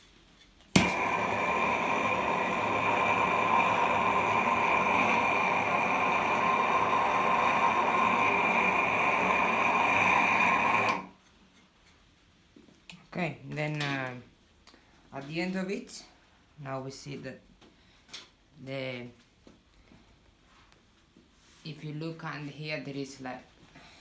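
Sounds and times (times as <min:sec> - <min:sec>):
blowtorch flame hissing: 0:00.7 - 0:11.1.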